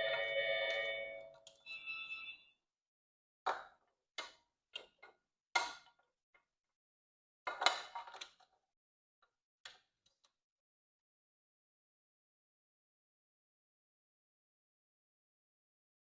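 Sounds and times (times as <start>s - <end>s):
small hard parts clicking and knocking: 7.5s - 8.6s.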